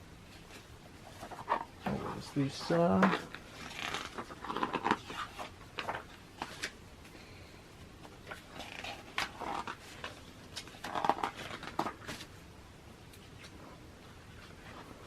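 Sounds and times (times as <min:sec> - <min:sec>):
magazine pages rustling: 0:00.2 - 0:07.1, 0:08.0 - 0:12.5.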